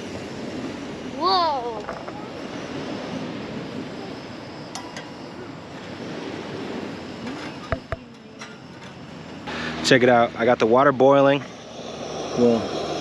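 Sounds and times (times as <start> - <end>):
ocean surf: 0.0 - 10.4
wind on microphone: 0.0 - 13.0.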